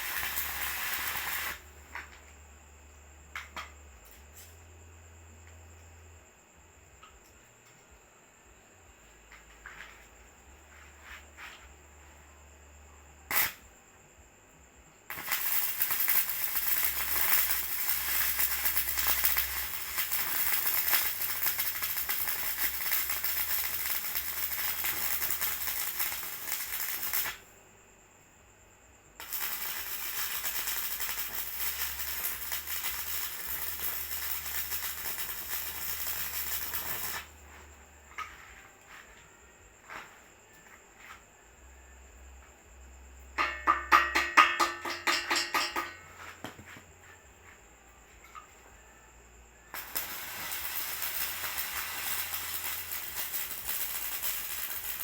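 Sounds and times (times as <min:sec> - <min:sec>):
electric arc welding crackle: 0:00.0 - 0:01.7, 0:13.3 - 0:13.6, 0:15.1 - 0:27.4, 0:29.2 - 0:37.3, 0:49.7 - 0:55.0.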